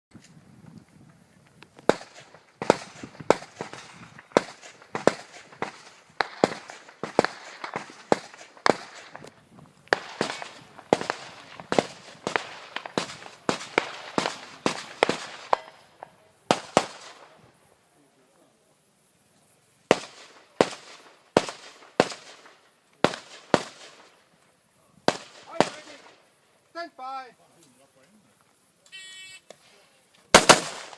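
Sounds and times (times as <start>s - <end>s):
rifle shots echoing: 1.9s - 9.2s, 9.9s - 17.4s, 30.3s - 30.9s.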